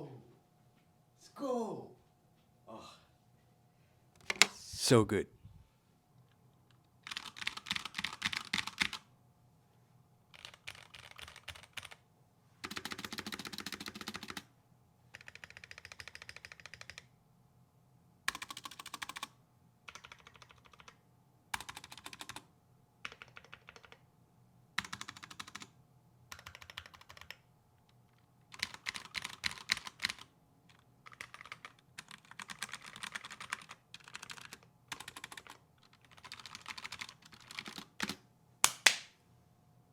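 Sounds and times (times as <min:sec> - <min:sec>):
fast typing on mechanical keyboard: 0:07.0 - 0:09.0, 0:10.3 - 0:12.0, 0:12.6 - 0:14.5, 0:15.1 - 0:17.1, 0:18.3 - 0:19.3, 0:19.9 - 0:21.0, 0:21.6 - 0:22.4, 0:23.0 - 0:24.0, 0:24.8 - 0:25.7, 0:26.3 - 0:27.4, 0:28.2 - 0:38.2.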